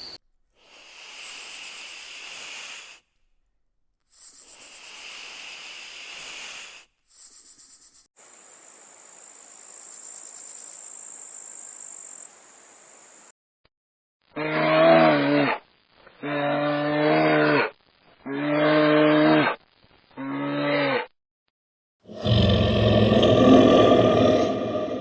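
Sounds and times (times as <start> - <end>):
insects chirring: 7.1 - 13.3.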